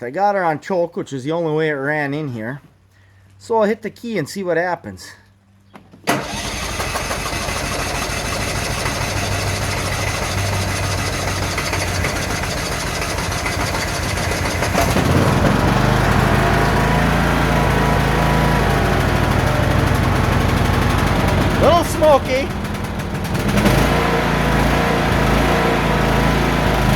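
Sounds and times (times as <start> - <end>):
lawn mower engine running: 5.9 - 26.9.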